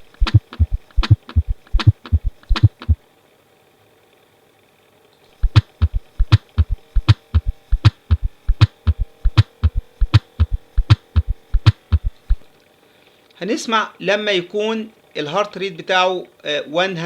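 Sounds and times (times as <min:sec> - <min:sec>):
heartbeat thumps: 0:00.0 - 0:03.0, 0:05.4 - 0:12.5
faint steady hum: 0:00.0 - 0:17.0.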